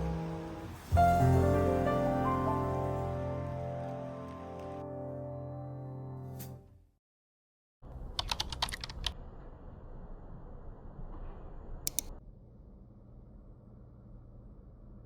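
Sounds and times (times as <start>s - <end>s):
background music: 0.0s - 6.8s
light clicks like typing: 8.2s - 9.2s, 11.9s - 12.2s.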